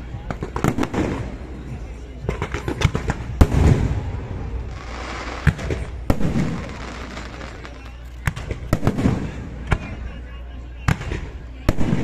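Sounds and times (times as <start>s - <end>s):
fireworks crackling and hiss: 2.3s - 9.7s.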